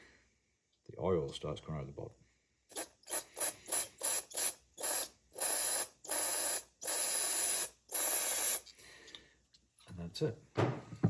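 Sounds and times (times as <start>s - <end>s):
aerosol spray hissing: 2.7s - 8.6s.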